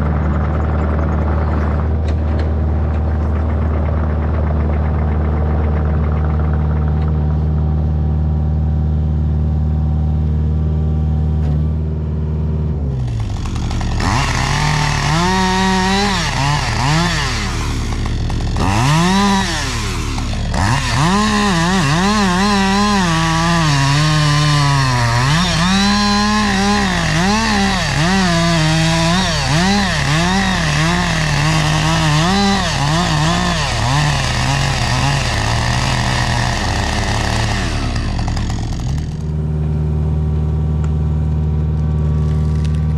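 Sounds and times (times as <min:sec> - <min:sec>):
chainsaw revving: 0:12.8 - 0:39.5.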